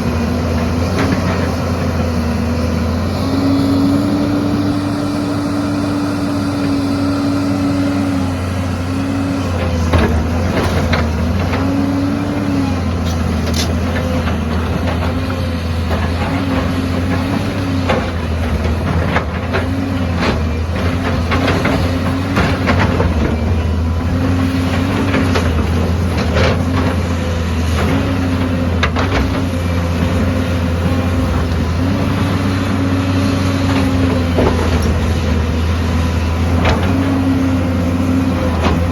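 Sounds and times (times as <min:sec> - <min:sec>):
diesel engine under changing load: 0:00.0 - 0:38.9.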